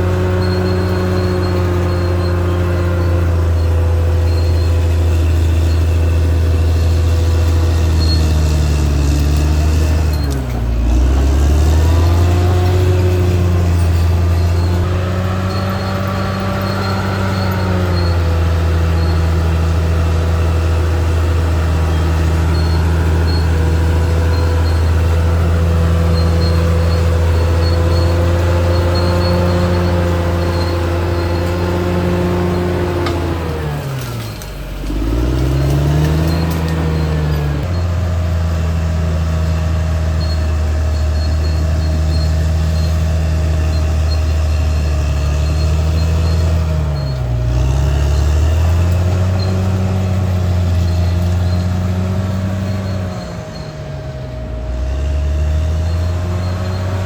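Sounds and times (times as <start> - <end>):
bulldozer diesel engine droning: 0.0 - 57.0.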